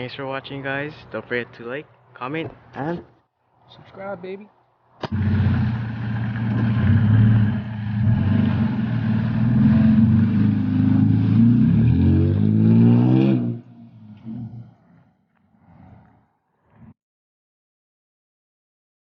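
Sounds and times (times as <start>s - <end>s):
vehicle engine revving: 5.0s - 14.8s.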